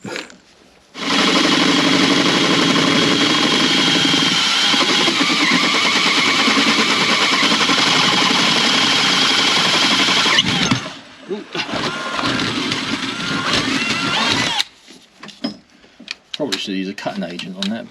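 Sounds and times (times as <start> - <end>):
electric drill whining: 1.0 - 14.7.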